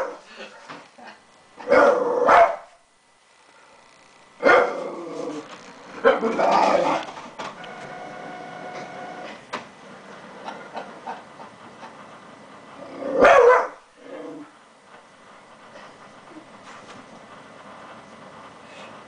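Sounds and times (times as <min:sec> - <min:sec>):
dog barking: 0:01.6 - 0:02.8, 0:04.4 - 0:04.8, 0:13.2 - 0:13.8
mechanical whine: 0:02.9 - 0:19.0.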